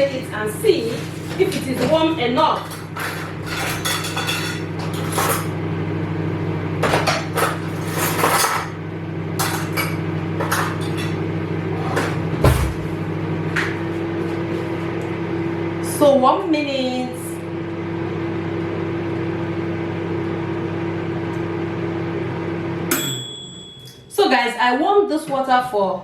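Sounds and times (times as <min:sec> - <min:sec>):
microwave oven humming: 0:00.0 - 0:26.0
heavy thump: 0:12.4 - 0:13.0.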